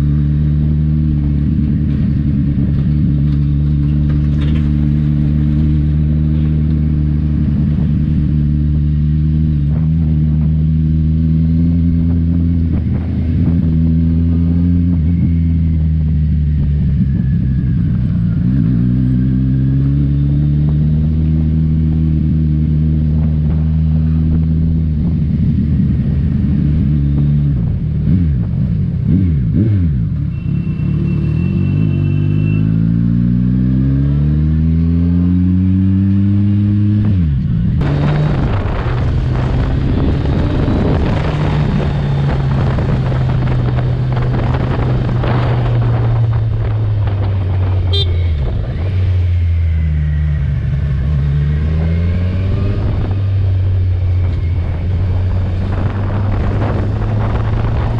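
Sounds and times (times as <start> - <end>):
motorcycle engine accelerating: 0.0 - 57.9
wind and road noise: 0.0 - 57.9
vehicle horn toot: 30.3 - 32.8, 47.8 - 48.5.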